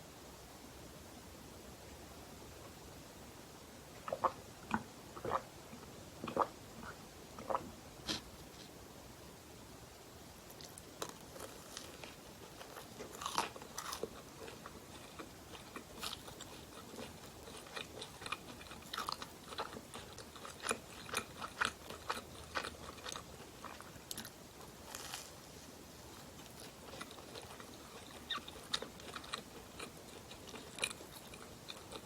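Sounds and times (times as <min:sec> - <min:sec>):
crunchy pastry chewing: 0:10.6 - 0:32.0.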